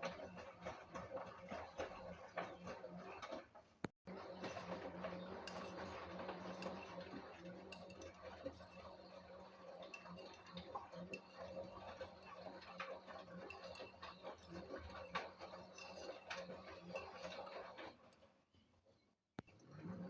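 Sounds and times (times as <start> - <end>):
washing machine hum: 0.0 - 18.1, 19.6 - 20.0.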